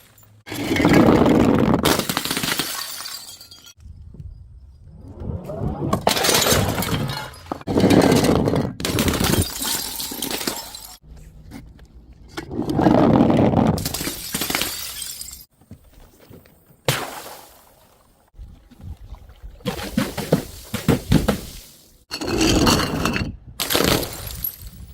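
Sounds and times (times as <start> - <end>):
glass bottles smashing: 0.0 - 3.8, 6.0 - 11.0, 13.8 - 15.5, 23.6 - 24.9.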